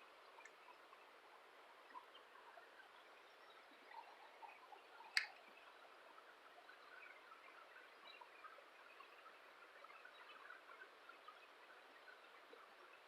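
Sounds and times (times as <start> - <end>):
faint ticks: 0.0 - 1.1, 1.8 - 13.0
faint steady hiss: 0.0 - 13.0.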